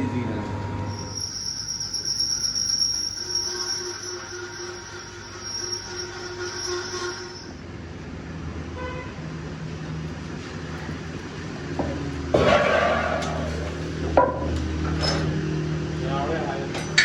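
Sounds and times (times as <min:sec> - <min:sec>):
insects chirring in pulses: 0:00.9 - 0:07.6.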